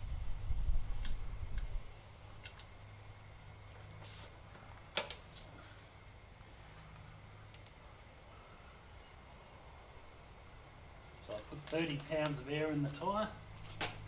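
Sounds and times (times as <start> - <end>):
air hissing: 0.0 - 2.7, 3.9 - 4.4
faint steady hum: 0.0 - 14.0.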